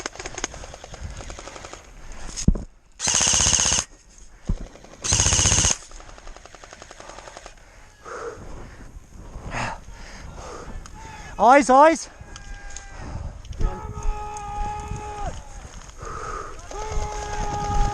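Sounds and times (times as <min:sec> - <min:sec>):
airsoft gun full-auto bursts: 0:03.0 - 0:03.9, 0:04.6 - 0:07.6.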